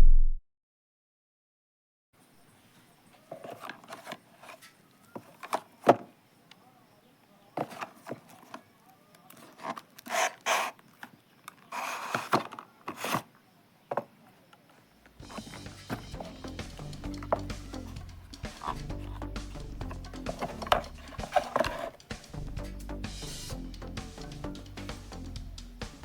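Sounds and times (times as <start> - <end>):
packaging clicks and rustles: 3.2 - 6.0, 15.2 - 22.4.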